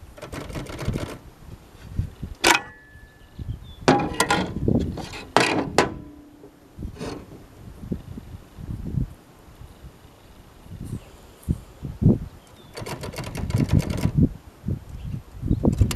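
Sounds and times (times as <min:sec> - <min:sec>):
short ringing tone: 0:02.6 - 0:03.4.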